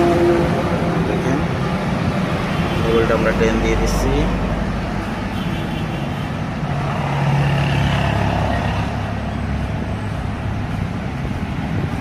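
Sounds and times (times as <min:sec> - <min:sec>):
traffic rumble: 0:00.0 - 0:12.0
vehicle engine passing by: 0:06.5 - 0:12.0.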